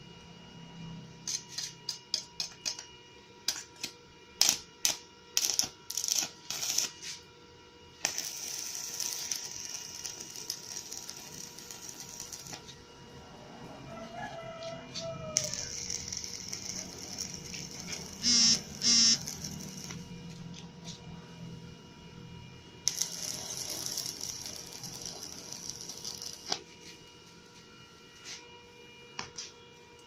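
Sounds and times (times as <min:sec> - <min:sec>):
welding arc crackling and hissing: 0:03.5 - 0:07.3, 0:08.0 - 0:12.8, 0:15.0 - 0:20.6, 0:22.9 - 0:26.6
loud buzzy bursts: 0:15.8 - 0:20.0.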